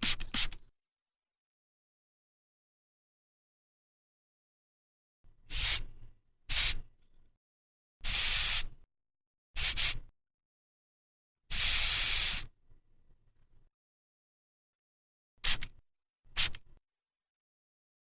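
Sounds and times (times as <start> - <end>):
spray paint can hissing: 5.5 - 5.8, 6.5 - 6.8, 8.0 - 8.8, 9.6 - 10.1, 11.5 - 12.5, 15.4 - 15.7, 16.4 - 16.6.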